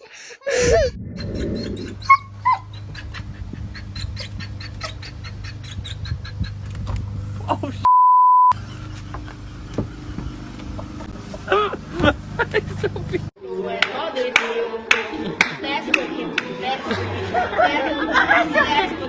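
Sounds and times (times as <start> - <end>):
electrical hum: 0.5 - 7.9
dog whimpering: 0.7 - 3.2
pure beep: 7.9 - 8.6.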